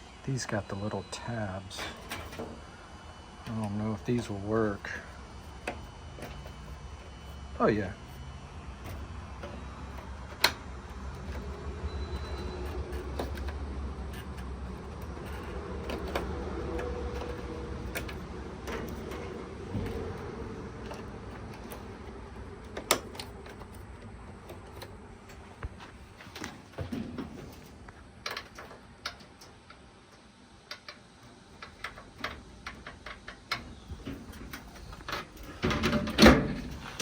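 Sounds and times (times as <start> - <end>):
steady low hum: 0.0 - 37.0
clicks and knocks of parts handled: 8.8 - 37.0.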